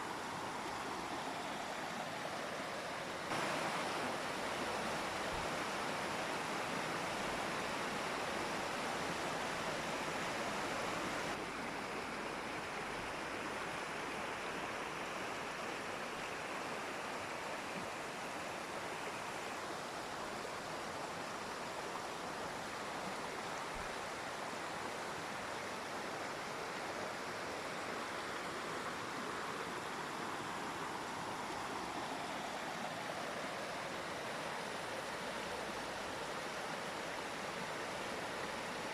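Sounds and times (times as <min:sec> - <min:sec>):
waterfall rushing: 0:00.0 - 0:11.5.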